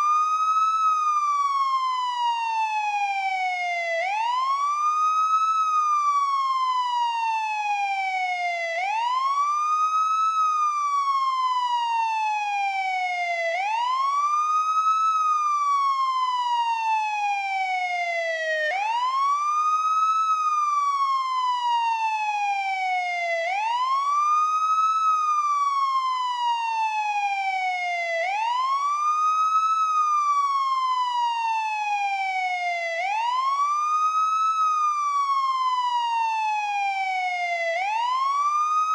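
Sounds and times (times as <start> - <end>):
police siren wailing: 0.0 - 38.9.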